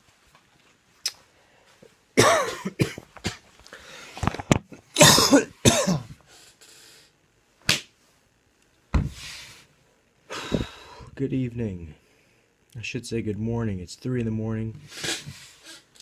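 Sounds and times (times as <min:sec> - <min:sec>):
man coughing harshly: 0:02.2 - 0:03.4, 0:05.0 - 0:06.2.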